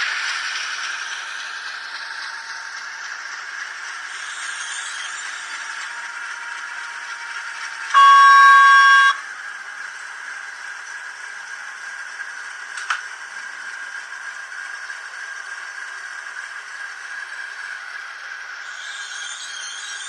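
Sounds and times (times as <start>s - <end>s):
model train rattling on track: 0.0s - 20.0s
model train horn blast: 7.9s - 9.2s.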